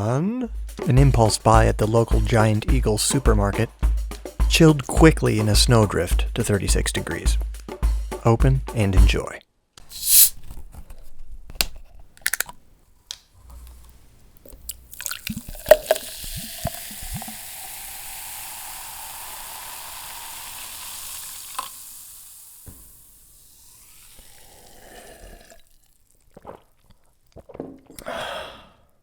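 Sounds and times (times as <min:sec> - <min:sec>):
carbonation fizzing: 0:09.9 - 0:10.4, 0:14.6 - 0:26.8
soda pouring into a glass: 0:09.9 - 0:10.4, 0:14.7 - 0:26.3.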